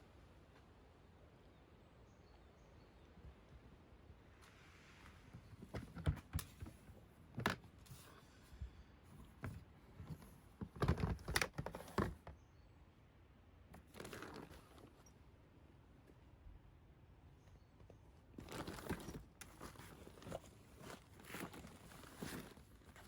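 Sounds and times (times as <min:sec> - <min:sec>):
rustling of handled objects: 0:04.4 - 0:12.4, 0:13.7 - 0:15.3, 0:17.6 - 0:23.0.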